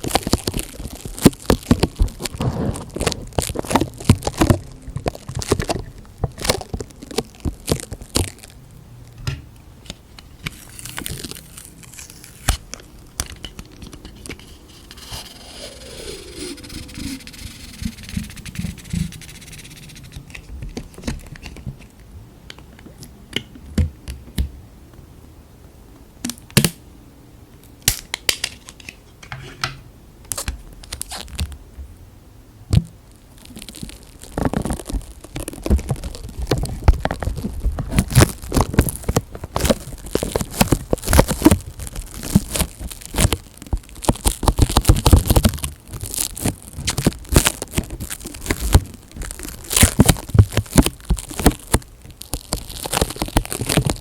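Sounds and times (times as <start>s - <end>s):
plastic crackling: 0.0s - 9.2s, 9.8s - 21.9s, 33.3s - 54.0s
sticky tape peeling and tearing: 10.4s - 20.5s.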